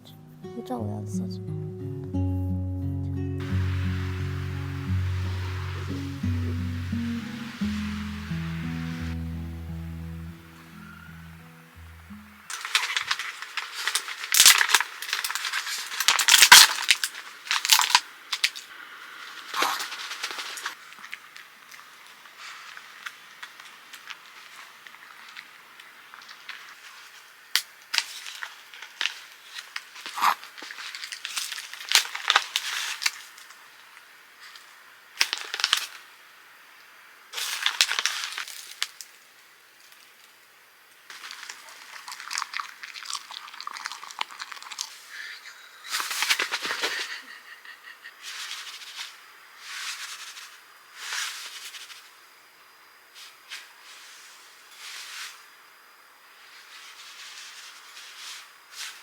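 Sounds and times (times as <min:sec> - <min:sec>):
rustling and crinkling: 0:12.5 - 0:36.1, 0:37.4 - 0:40.4, 0:41.0 - 0:52.3, 0:53.1 - 0:55.6, 0:56.3 - 0:59.0.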